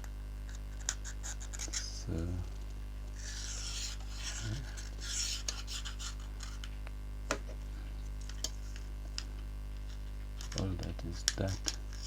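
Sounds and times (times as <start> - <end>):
adhesive scraping strokes: 3.2 - 6.6.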